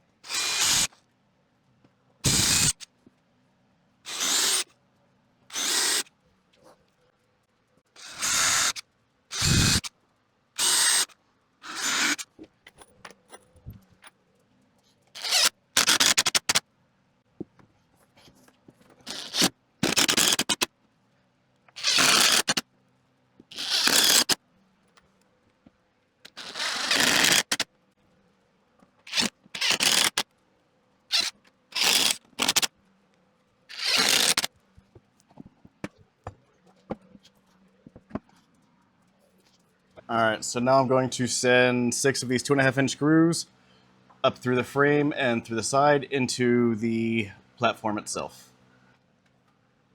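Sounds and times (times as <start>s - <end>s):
power drill driving screws: 0.2s - 0.9s, 2.2s - 2.8s, 4.1s - 4.6s, 5.5s - 6.1s, 8.0s - 9.9s, 10.6s - 12.3s, 15.2s - 16.6s, 19.1s - 20.7s, 21.8s - 22.6s, 23.5s - 24.4s, 26.3s - 27.6s, 29.1s - 30.2s, 31.1s - 32.7s, 33.7s - 34.5s.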